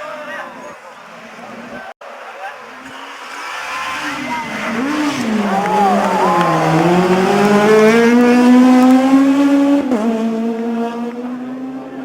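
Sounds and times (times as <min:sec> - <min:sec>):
rally car engine accelerating: 0:02.9 - 0:12.0.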